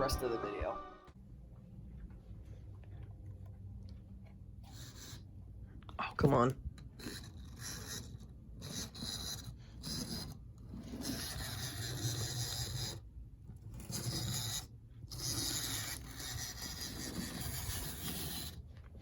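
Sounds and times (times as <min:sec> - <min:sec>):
model train motor whirring: 0:07.0 - 0:13.0, 0:13.6 - 0:18.6.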